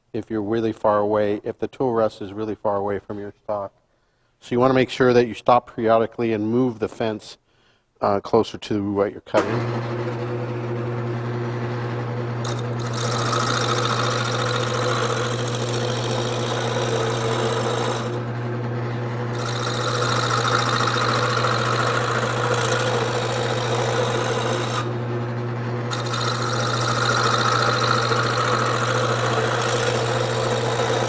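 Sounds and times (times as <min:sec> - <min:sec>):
wood lathe motor hum: 0:09.4 - 0:31.0
tool scraping spinning wood: 0:12.4 - 0:31.0.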